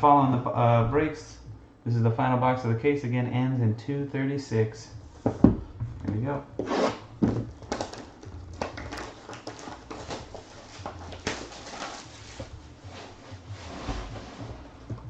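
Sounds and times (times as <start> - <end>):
cardboard and wrapper rustling: 6.6 - 15.0.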